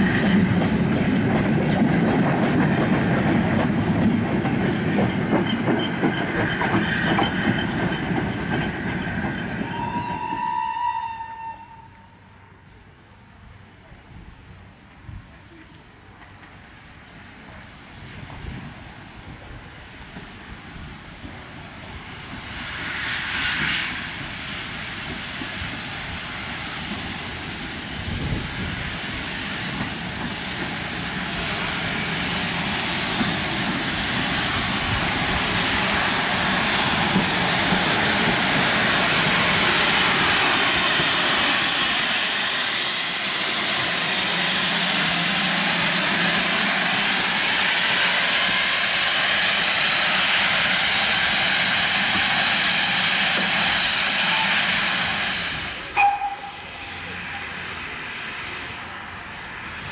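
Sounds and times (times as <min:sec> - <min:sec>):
steam train rushing hiss: 0:18.1 - 0:59.9.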